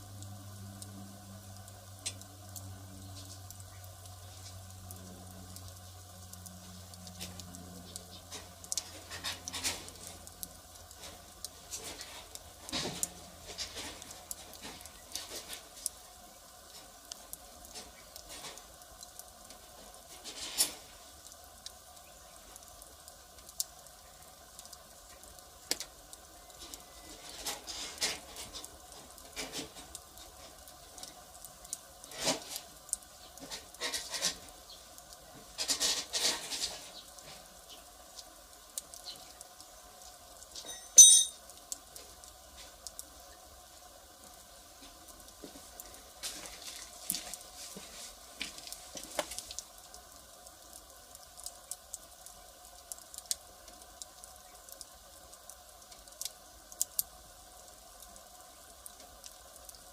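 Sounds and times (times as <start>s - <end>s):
faint steady whine: 0.0s - 27.5s
fire crackling and popping: 0.0s - 59.9s.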